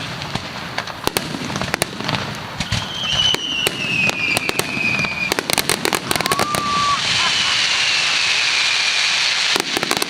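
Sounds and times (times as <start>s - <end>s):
fireworks cracking and popping: 0.0s - 10.0s
falling firework whistle: 2.6s - 10.0s.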